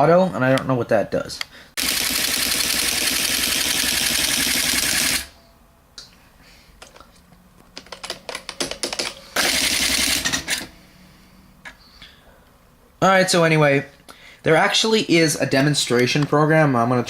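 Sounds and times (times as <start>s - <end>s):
typewriter rapid clatter: 1.8s - 5.3s, 8.0s - 10.5s.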